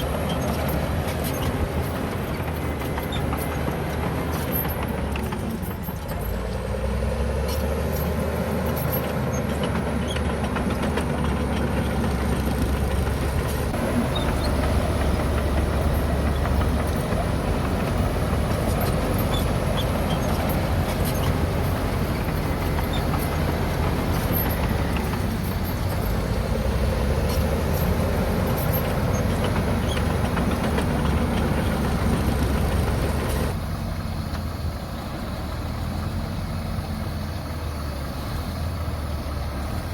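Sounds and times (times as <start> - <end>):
earthmoving machine engine drone: 8.8 - 33.6.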